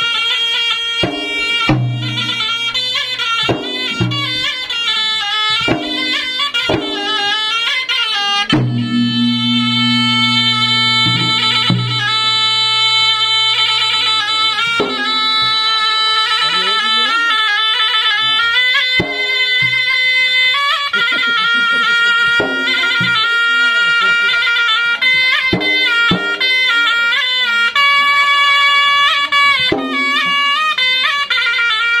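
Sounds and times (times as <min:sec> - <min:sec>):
shrill reedy wind instrument: 0:00.0 - 0:32.0
drum strokes: 0:01.0 - 0:07.4, 0:08.4 - 0:15.8, 0:18.9 - 0:20.0, 0:29.7 - 0:30.6.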